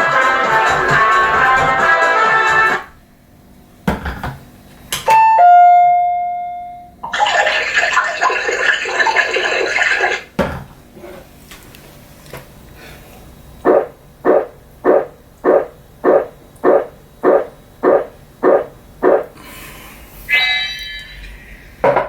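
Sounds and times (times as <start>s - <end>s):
dense music-like sound: 0.0s - 2.9s
bright bell-like ding: 5.2s - 6.9s.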